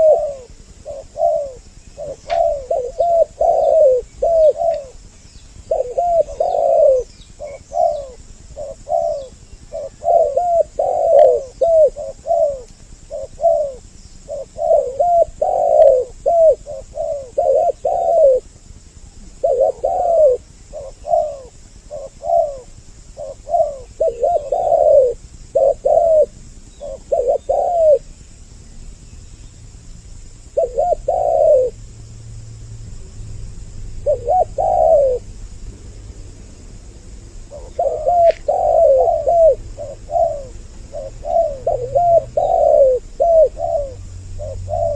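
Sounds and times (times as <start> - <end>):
doves cooing: 0.0 - 28.6, 29.7 - 32.1, 33.8 - 44.9.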